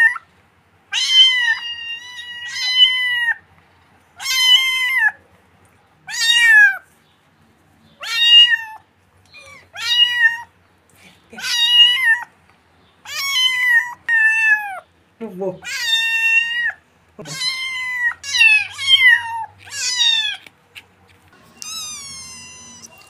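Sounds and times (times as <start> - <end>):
kitten meowing: 0.9 - 3.4, 4.2 - 5.2, 6.1 - 6.8, 8.0 - 8.8, 9.4 - 10.5, 11.4 - 12.3, 13.0 - 14.8, 15.6 - 20.5, 21.5 - 23.0.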